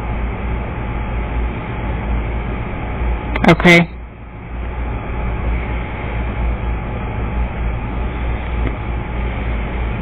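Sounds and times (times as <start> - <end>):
low rumbling background noise: 0.0 - 10.0.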